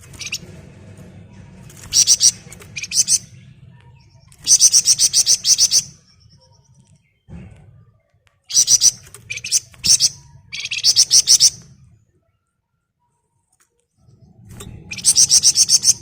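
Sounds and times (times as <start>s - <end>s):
songbird rattling trills: 0.0s - 0.6s, 1.7s - 3.4s, 4.3s - 6.1s, 8.5s - 11.6s, 14.6s - 16.0s.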